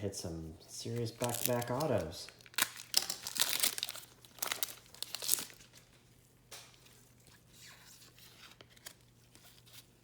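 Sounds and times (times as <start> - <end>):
trading cards rustling: 0.8 - 5.8
loud crinkle: 1.2 - 5.7.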